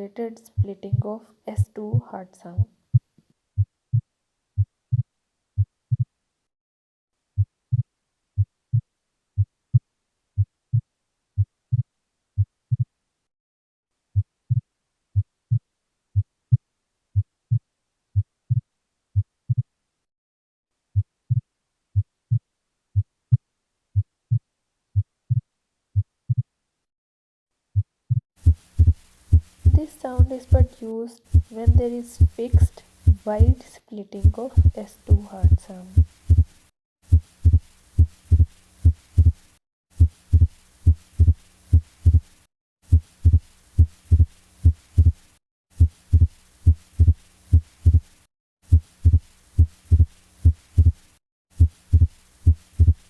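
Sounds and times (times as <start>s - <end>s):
heartbeat through stethoscope: 0.6s - 6.1s, 7.4s - 12.9s, 14.2s - 15.6s, 18.2s - 19.7s, 21.0s - 22.4s, 25.0s - 26.5s, 27.8s - 36.5s, 37.1s - 39.4s, 40.0s - 42.3s, 42.9s - 45.2s, 45.8s - 48.1s, 48.7s - 51.0s, 51.6s - 53.0s.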